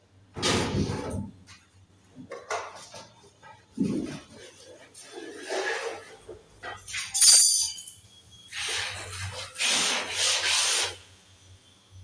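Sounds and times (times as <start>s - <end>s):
sharp metallic clink: 7.1s - 8.1s.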